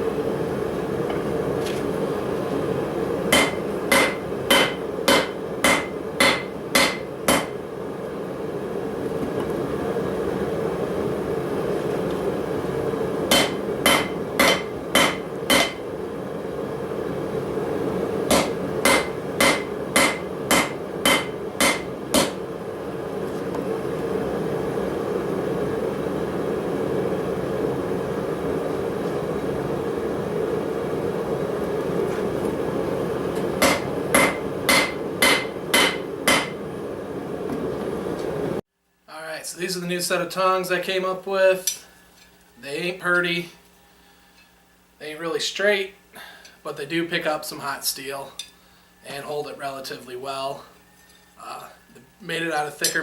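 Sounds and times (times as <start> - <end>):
hammer striking steel on anvil: 3.3 - 7.6, 13.3 - 15.8, 18.3 - 22.4, 33.6 - 36.6.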